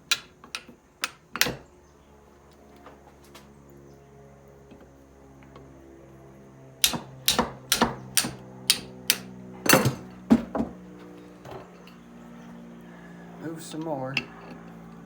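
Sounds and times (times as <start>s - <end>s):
hammer striking metal: 6.8s - 10.0s.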